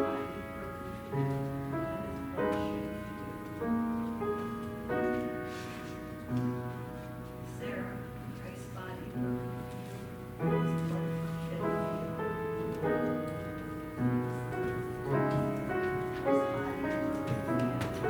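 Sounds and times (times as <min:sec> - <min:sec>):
slow keyboard chords: 0:00.0 - 0:18.0.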